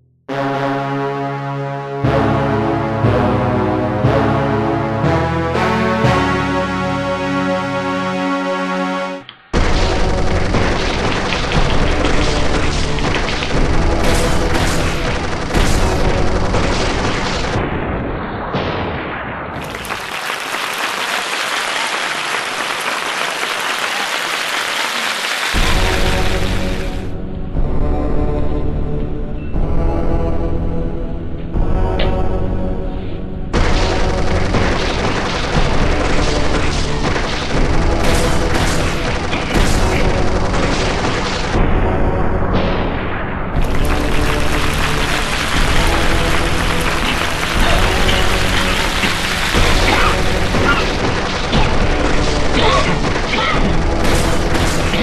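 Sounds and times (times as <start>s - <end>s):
music with deep booms: 0.0s - 18.8s, 25.6s - 55.0s
dense crackling noise: 9.6s - 27.1s, 33.6s - 55.0s.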